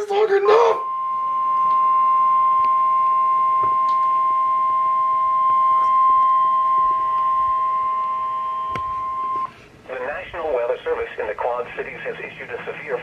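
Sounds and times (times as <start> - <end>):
high-pitched alarm tone: 0.0 - 9.5
radio static clicks: 5.8 - 13.0.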